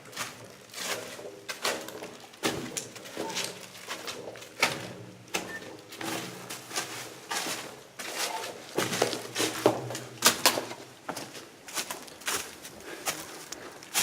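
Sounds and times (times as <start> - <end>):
footsteps crunching on debris: 0.0 - 14.0.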